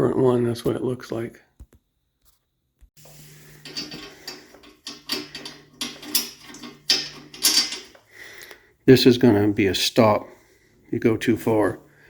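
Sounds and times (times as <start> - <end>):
metal hardware clicking and clinking: 3.0 - 8.0
steady low hum: 3.0 - 8.8.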